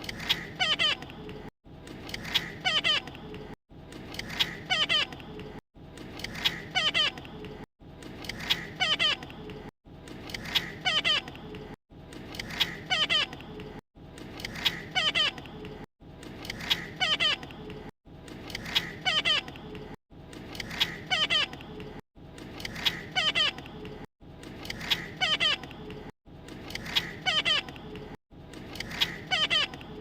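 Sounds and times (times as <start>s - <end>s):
parrot squeaky calls: 0.2s - 1.1s, 2.2s - 3.2s, 4.3s - 5.2s, 6.4s - 7.2s, 8.4s - 9.2s, 10.4s - 11.4s, 12.5s - 13.4s, 14.6s - 15.4s, 16.7s - 17.5s, 18.6s - 19.5s, 20.7s - 21.6s, 22.8s - 23.6s, 24.9s - 25.7s, 26.8s - 27.7s, 28.9s - 30.0s.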